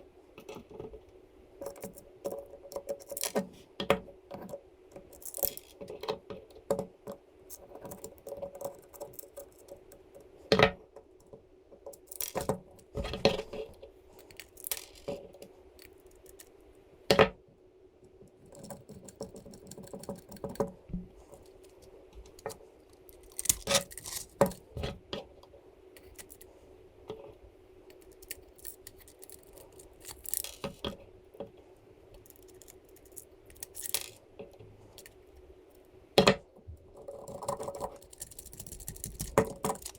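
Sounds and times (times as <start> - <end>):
plastic parts and screws rattling: 11.9 - 16.5, 18.2 - 25.2, 26.0 - 26.5, 27.9 - 31.1, 32.2 - 35.2, 37.0 - 39.9.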